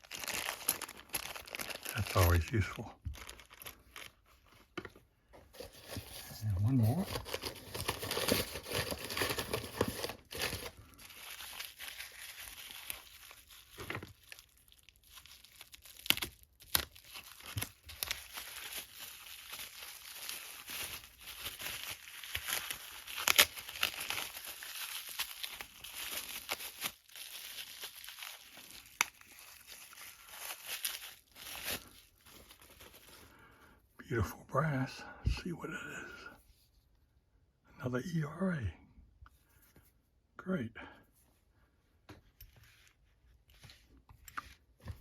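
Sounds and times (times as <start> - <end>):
wrapping crumpled and torn: 0.0 - 4.8, 5.5 - 33.5.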